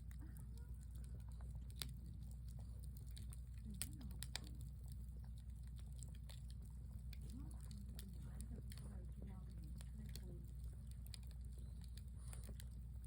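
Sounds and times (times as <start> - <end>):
low steady rumble: 0.0 - 13.0
campfire crackling and popping: 2.9 - 4.5.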